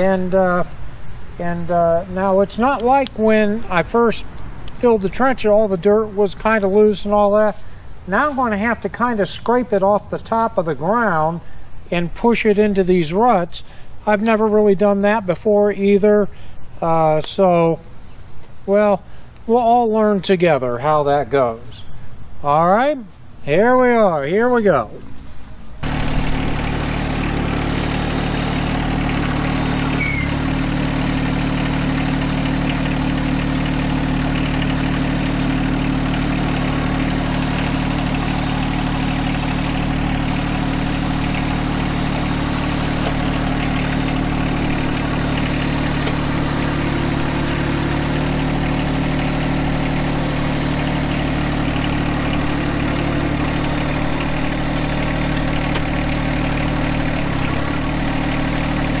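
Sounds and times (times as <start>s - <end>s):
tractor diesel engine running: 0.0s - 10.0s, 25.8s - 59.0s.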